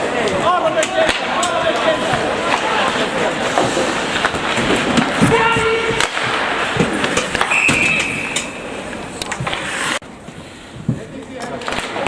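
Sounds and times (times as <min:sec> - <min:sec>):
hockey sticks and puck clacking: 0:00.0 - 0:12.0
noisy rink din: 0:00.0 - 0:12.0
referee's whistle blowing: 0:07.5 - 0:08.5.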